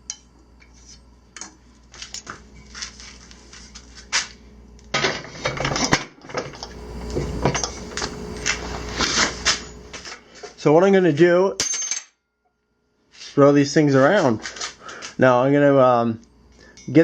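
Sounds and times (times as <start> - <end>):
steel tools clinking and clattering: 5.0 - 10.2, 11.6 - 12.2.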